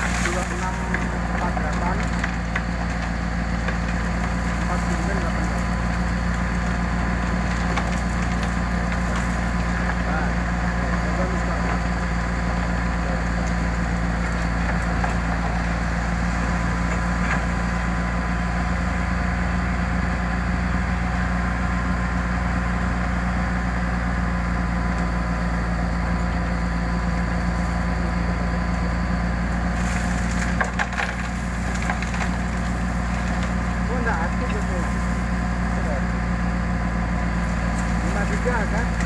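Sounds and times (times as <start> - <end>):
excavator diesel engine idling: 0.0 - 39.0.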